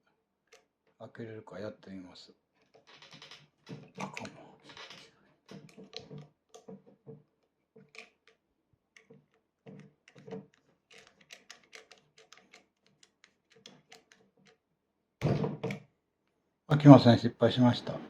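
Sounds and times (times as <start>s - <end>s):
faint plastic clicks and taps: 0.5s - 1.1s, 2.6s - 14.6s.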